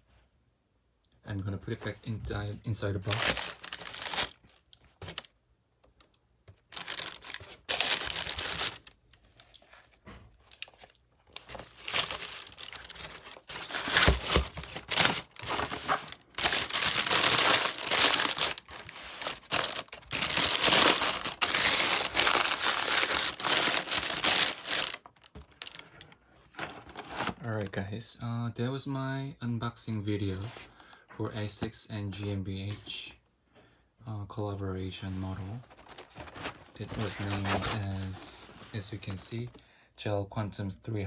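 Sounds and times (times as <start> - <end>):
wrapping paper crinkling: 2.9 - 5.3, 6.6 - 27.4, 35.1 - 38.8.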